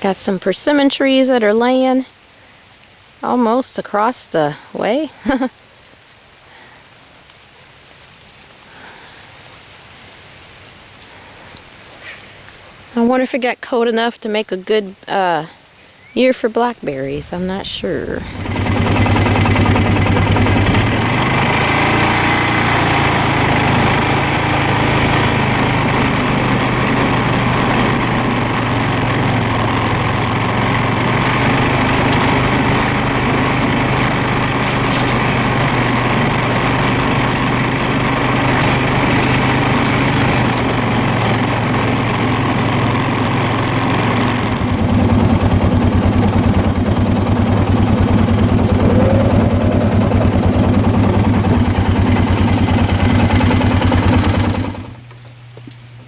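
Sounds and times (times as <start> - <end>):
engine running loudly: 16.8 - 55.0.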